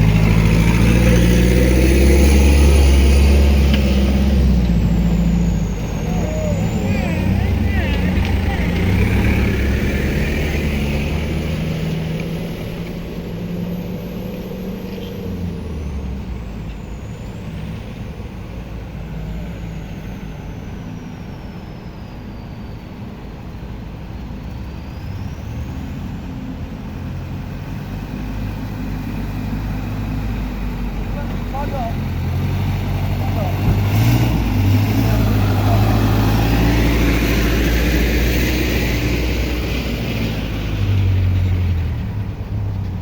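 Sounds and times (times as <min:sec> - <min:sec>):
diesel engine running: 0:00.0 - 0:43.0.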